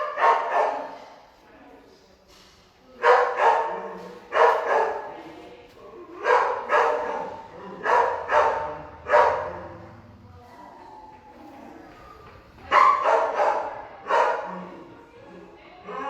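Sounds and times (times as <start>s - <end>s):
dog barking with echo: 0.0s - 1.0s, 3.0s - 5.1s, 6.2s - 10.0s, 12.7s - 14.7s.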